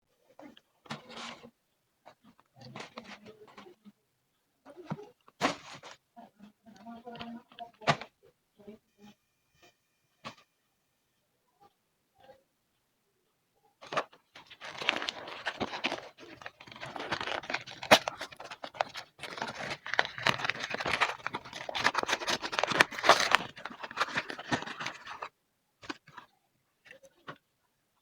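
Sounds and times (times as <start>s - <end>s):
packaging tearing and crinkling: 13.8s - 26.2s.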